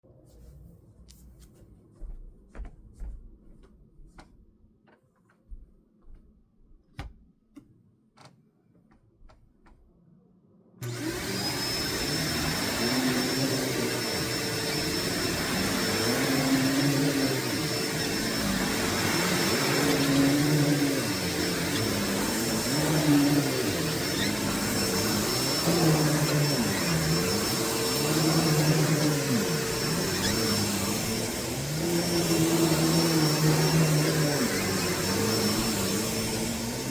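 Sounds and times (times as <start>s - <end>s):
upright vacuum cleaner running: 10.8s - 36.9s.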